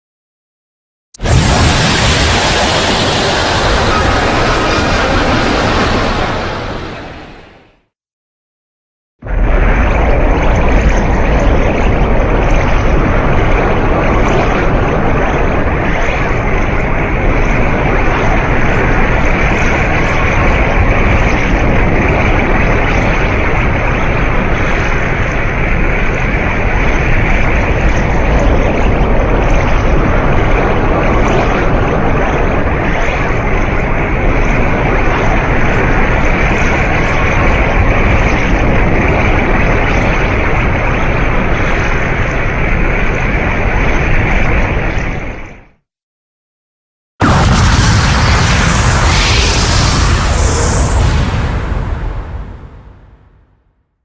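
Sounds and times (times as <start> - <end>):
loud rushing energy noise: 1.2 - 7.7, 47.2 - 53.4.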